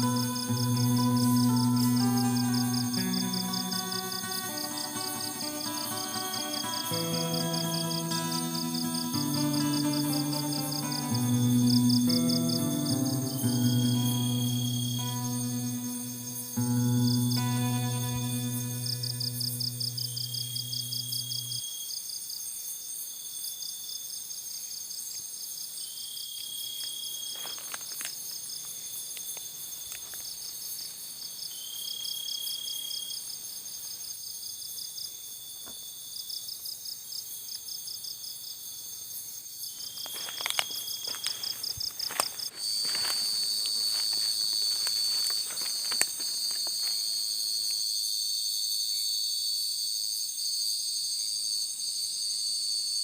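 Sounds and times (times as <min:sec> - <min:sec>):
crickets and insects chorus: 0:00.0 - 0:53.0.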